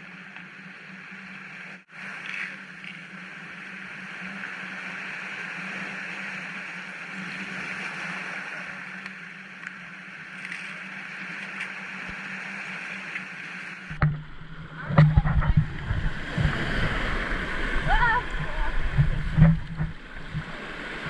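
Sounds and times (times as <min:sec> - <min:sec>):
steady water noise: 0:00.0 - 0:21.0
low hum: 0:00.1 - 0:21.0
water splashing and knocking: 0:13.9 - 0:21.0.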